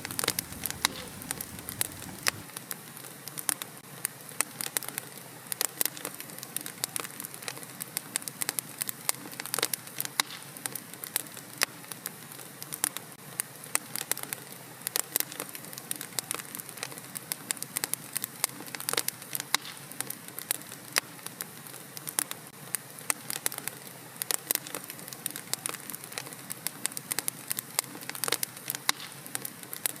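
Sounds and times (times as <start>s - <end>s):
wood fire crackling and popping: 0.0s - 2.5s.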